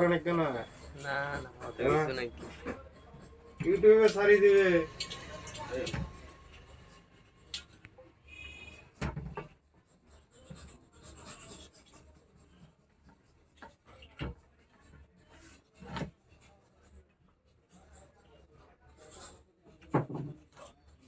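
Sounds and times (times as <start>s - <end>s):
rubbing and scraping: 0.0s - 12.8s.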